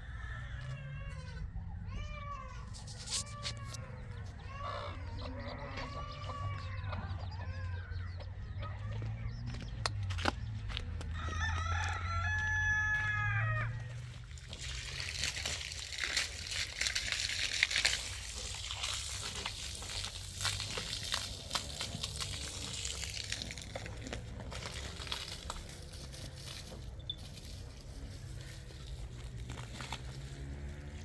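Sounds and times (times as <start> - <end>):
rooster crowing: 11.1 - 13.9.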